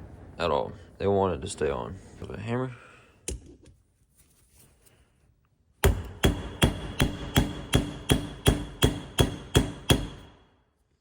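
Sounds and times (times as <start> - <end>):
hammer striking metal: 5.8 - 10.4.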